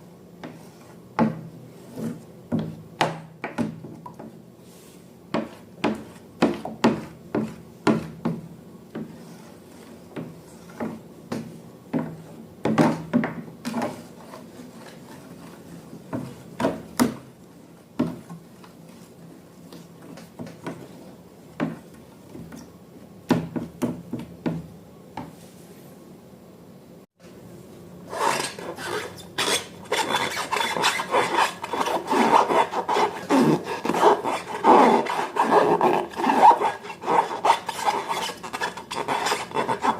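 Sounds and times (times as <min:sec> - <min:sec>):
scraping and rasping: 0:28.1 - 0:39.9.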